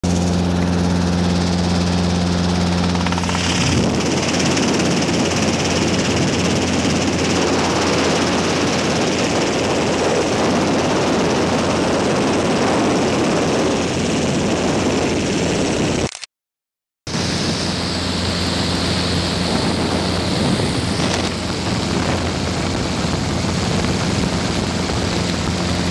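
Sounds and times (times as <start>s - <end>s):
helicopter rotor and engine drone: 0.0s - 16.2s, 17.1s - 25.9s.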